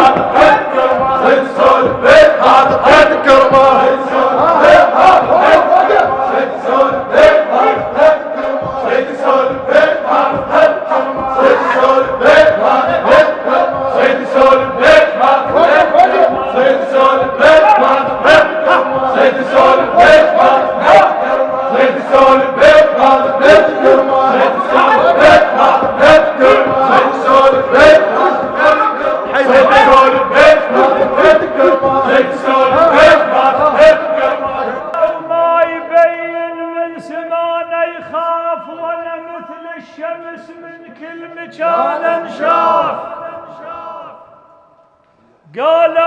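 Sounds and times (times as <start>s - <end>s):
sharp percussive beats: 0.0s - 35.3s
men chanting: 0.0s - 39.0s, 41.2s - 44.4s.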